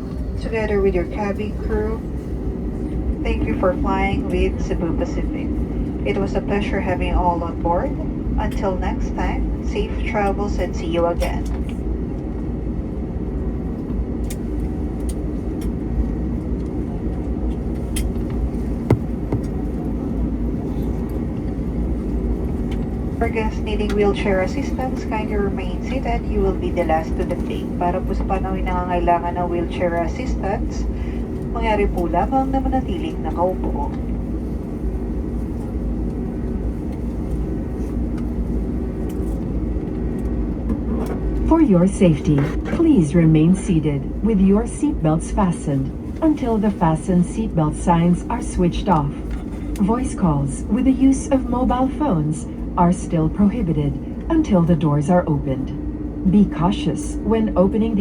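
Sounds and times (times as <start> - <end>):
air conditioning: 0.0 - 58.0
aircraft cabin rumble: 0.0 - 58.0
faint steady hums: 13.7 - 58.0.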